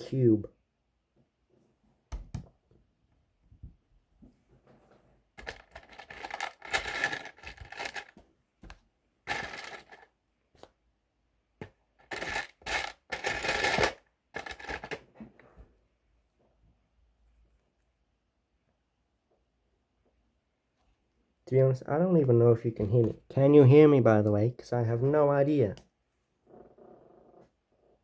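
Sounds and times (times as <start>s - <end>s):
plastic pieces clattering: 5.4s - 8.2s, 9.3s - 10.1s, 12.0s - 15.0s.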